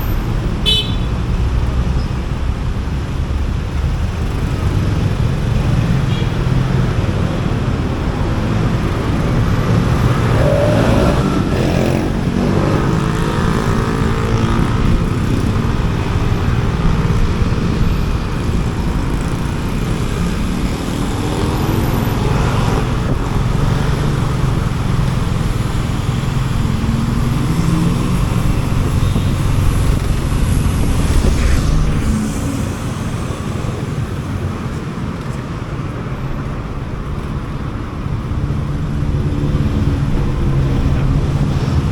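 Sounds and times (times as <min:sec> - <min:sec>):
road and traffic noise: 0:00.0 - 0:41.9
motorcycle engine revving: 0:08.6 - 0:34.8.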